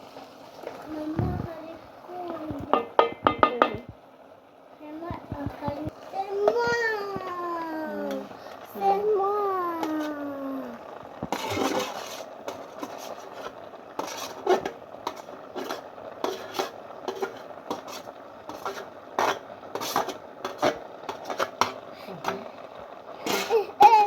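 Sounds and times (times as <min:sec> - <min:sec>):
metal utensil scraping a pot: 0:11.3 - 0:22.4, 0:23.2 - 0:23.6.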